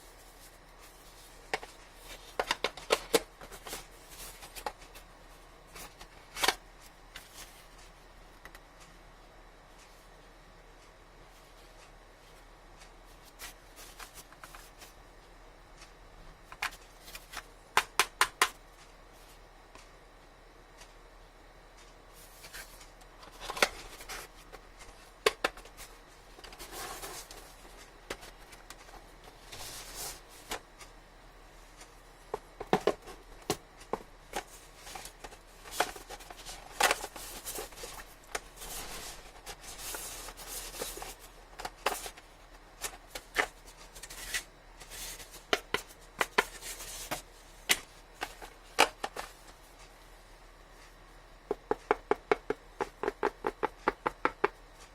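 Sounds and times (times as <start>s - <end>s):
clicks and taps on packaging: 2.4s - 3.8s, 16.5s - 18.6s, 23.4s - 25.8s, 32.3s - 38.5s, 45.4s - 49.3s, 51.5s - 54.6s
packaging rustling: 32.6s - 47.3s.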